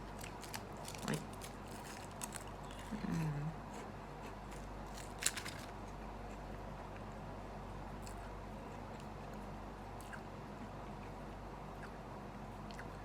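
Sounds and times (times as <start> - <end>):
chocolate bar clicks and crackles: 4.9 - 5.8.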